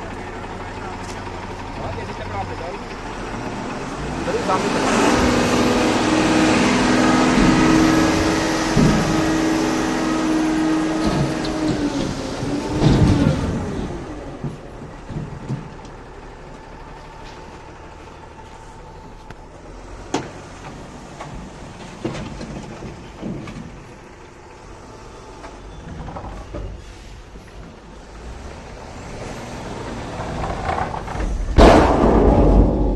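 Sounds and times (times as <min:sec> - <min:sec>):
heavy vehicle engine: 0:00.0 - 0:32.9
sharp knocks: 0:07.3 - 0:10.0, 0:31.5 - 0:32.9.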